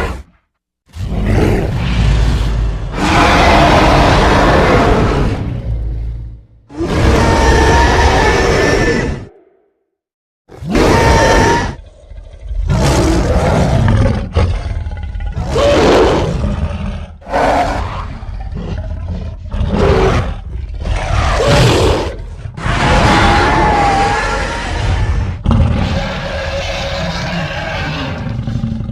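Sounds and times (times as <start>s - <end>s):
loud monster roars: 0.9s - 9.6s, 10.5s - 28.9s.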